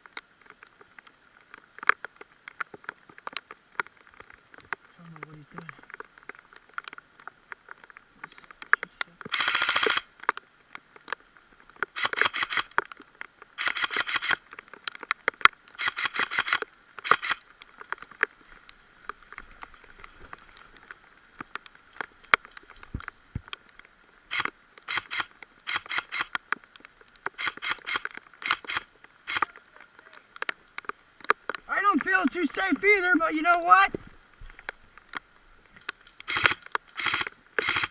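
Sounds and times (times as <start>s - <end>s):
airsoft rifle full-auto bursts: 9.3s - 10.1s, 12.0s - 12.7s, 13.6s - 14.4s, 15.8s - 17.4s, 24.3s - 26.3s, 27.4s - 29.5s, 36.3s - 37.9s.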